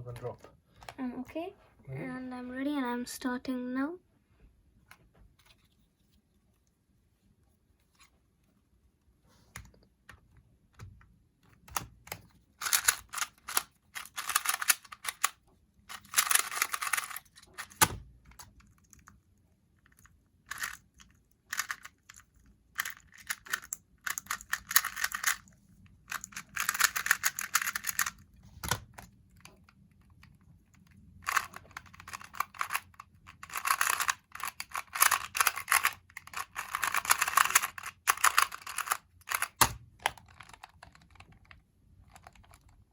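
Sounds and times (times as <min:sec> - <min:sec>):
plastic cube clicking: 0:11.5 - 0:19.0, 0:20.5 - 0:20.9, 0:21.5 - 0:22.2, 0:22.8 - 0:25.5, 0:26.1 - 0:29.1, 0:31.2 - 0:42.7.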